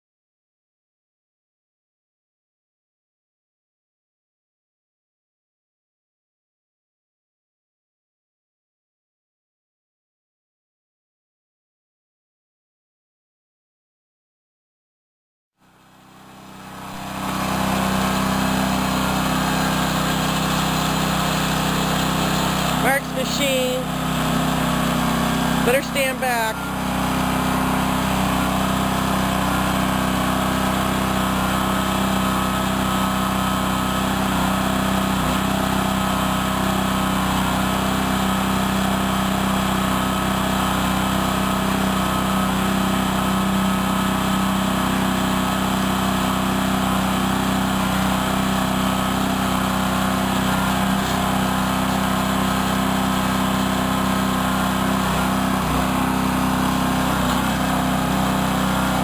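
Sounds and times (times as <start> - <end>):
small engine running steadily: 15.6 - 59.0.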